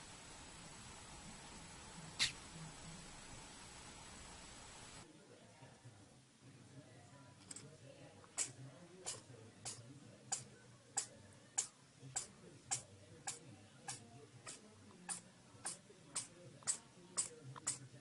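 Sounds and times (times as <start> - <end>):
faint steady ticking: 8.4 - 17.9.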